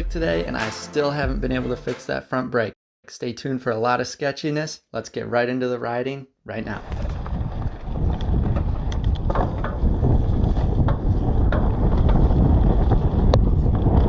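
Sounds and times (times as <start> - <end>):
bike tyre rumble: 6.8 - 14.0
wind buffeting microphone: 6.9 - 14.0
bike clicks and rattles: 7.1 - 14.0.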